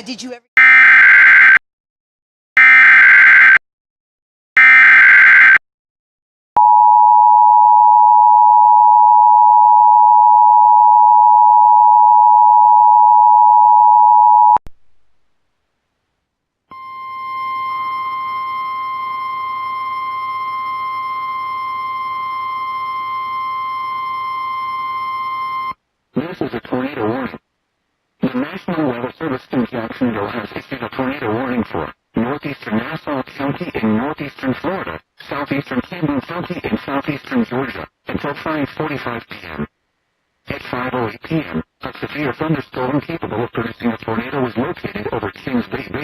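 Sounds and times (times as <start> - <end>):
two-tone attention signal: 16.7 - 25.8.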